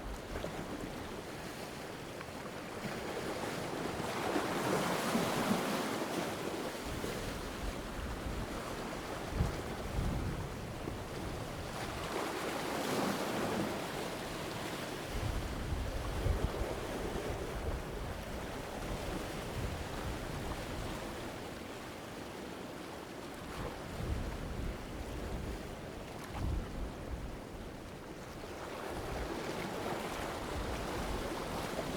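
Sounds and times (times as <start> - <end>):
sea waves breaking over rocks: 0.0 - 22.6, 23.3 - 31.9
wind on microphone: 6.9 - 12.2, 15.0 - 21.1, 23.5 - 31.9.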